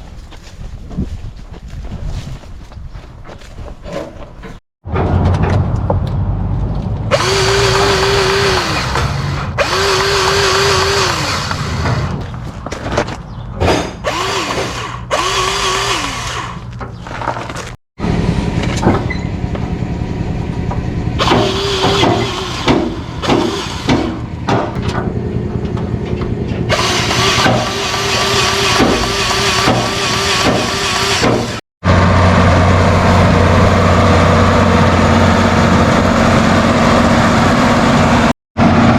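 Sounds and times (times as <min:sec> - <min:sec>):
engine running: 0:04.9 - 0:12.7, 0:14.0 - 0:38.9
machine whining: 0:07.1 - 0:12.2.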